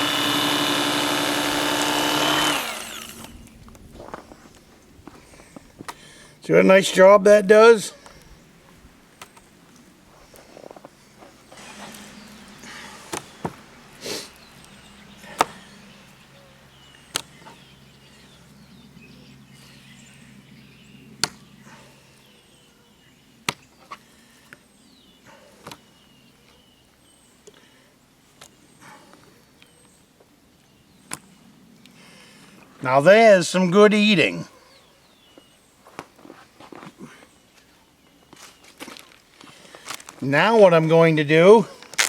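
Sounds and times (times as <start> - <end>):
electric knife motor hum: 0.0 - 3.6, 11.5 - 13.6.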